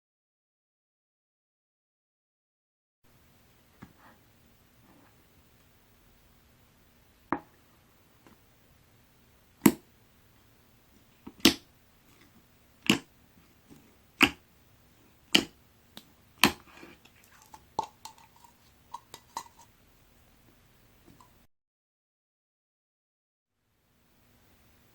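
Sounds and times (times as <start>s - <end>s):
slime popping: 12.8s - 13.1s, 14.2s - 14.4s, 15.3s - 19.4s.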